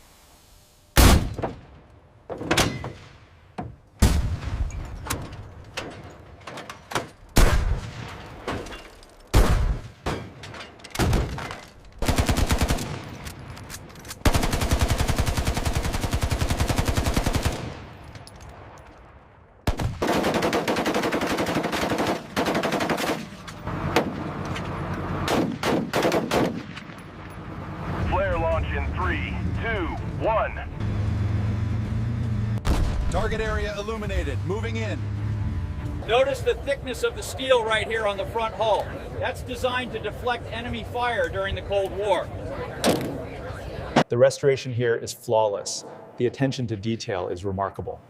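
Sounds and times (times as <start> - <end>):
single heavy gunshots echoing: 1.0 - 1.7
automatic gunfire bursts: 12.0 - 13.0, 14.2 - 17.8, 19.7 - 23.2, 25.3 - 26.6.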